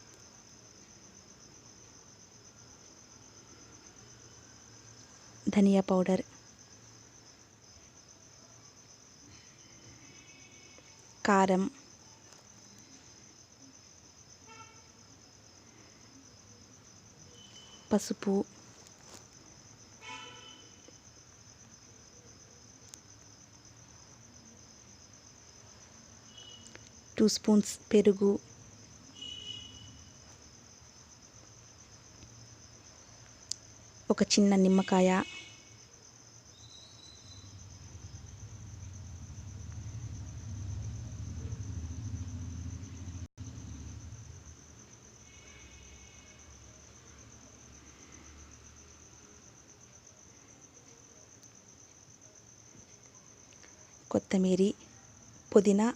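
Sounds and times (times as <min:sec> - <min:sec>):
crickets chirping: 0:00.0 - 0:55.9
high rapidly pulsing chirr: 0:36.6 - 0:44.5
low rumble: 0:37.4 - 0:44.6.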